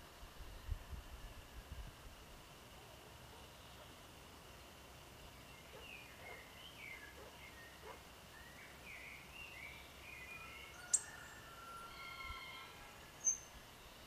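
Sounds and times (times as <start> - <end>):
small birds singing: 3.3 - 14.0.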